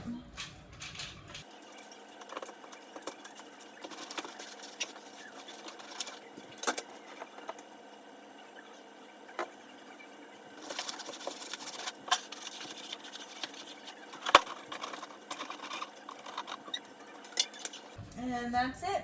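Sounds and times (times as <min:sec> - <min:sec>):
plastic parts clicking and rattling: 0:00.4 - 0:07.6, 0:10.6 - 0:18.0.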